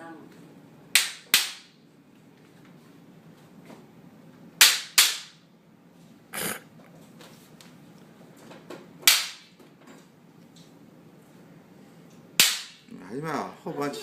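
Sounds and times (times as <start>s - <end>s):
bamboo sword whacks: 1.0s - 1.7s, 4.6s - 5.4s, 9.0s - 9.5s, 12.4s - 12.8s.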